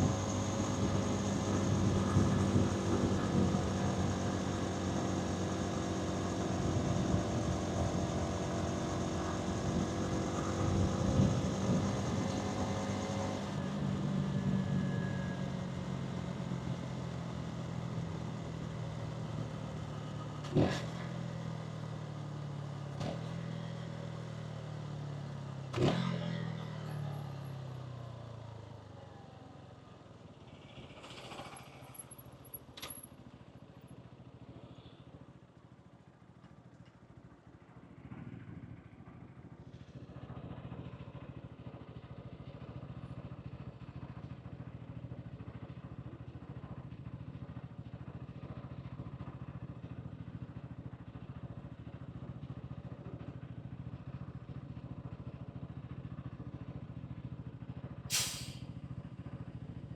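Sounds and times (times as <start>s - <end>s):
motorcycle engine running: 0.0s - 27.6s, 37.1s - 59.9s
wind and road noise: 0.0s - 33.4s, 37.5s - 51.0s.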